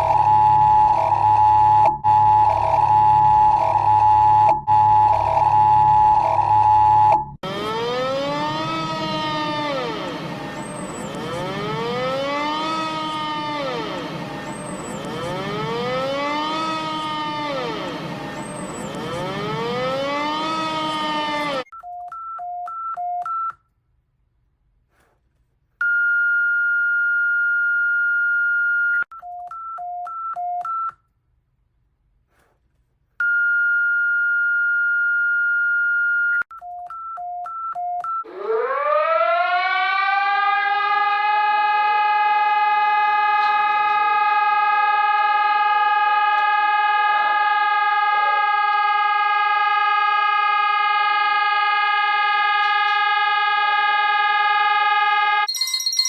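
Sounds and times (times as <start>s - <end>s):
civil defense siren wailing: 0.0s - 21.7s, 38.2s - 55.5s
alternating high and low beeps: 8.2s - 21.8s, 55.5s - 56.0s
steady electronic beep: 55.5s - 56.0s.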